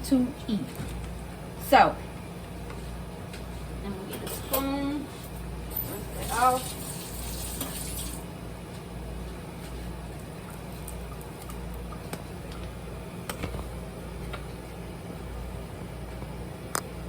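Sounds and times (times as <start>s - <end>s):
steady low hum: 0.0s - 17.0s
kitchen tap running: 6.2s - 8.3s.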